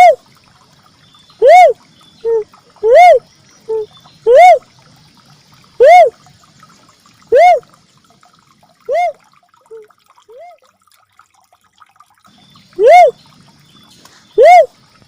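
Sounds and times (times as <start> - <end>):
dove cooing: 1.4 - 4.6, 8.8 - 10.6, 12.8 - 13.2.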